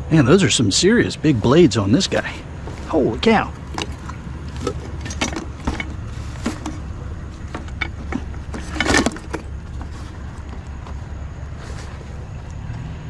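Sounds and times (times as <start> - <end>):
low vehicle rumble: 0.0 - 13.0
scrap metal clinking: 2.2 - 12.4.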